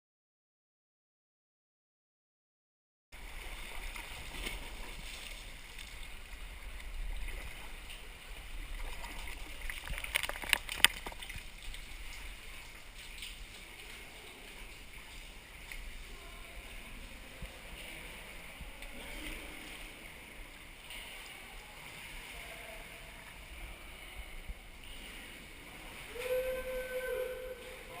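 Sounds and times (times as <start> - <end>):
water splashing around kayak: 3.2 - 28.0
short pitched call: 26.1 - 27.9.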